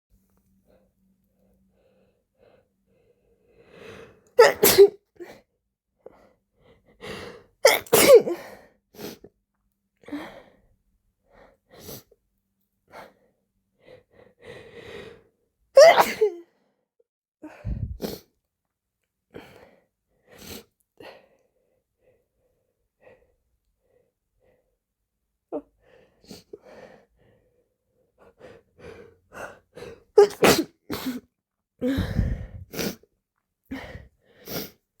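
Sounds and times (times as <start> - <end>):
person sneezing: 4.4 - 5.0, 7.6 - 8.4, 15.8 - 16.4, 30.2 - 31.2.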